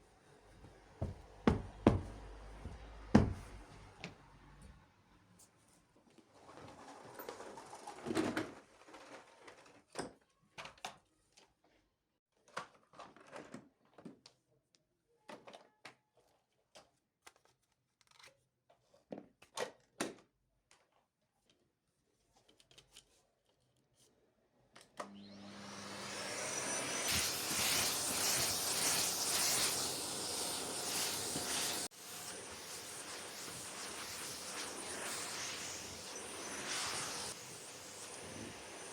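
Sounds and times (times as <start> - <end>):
vacuum cleaner running: 0.6 - 4.6, 25.0 - 38.9.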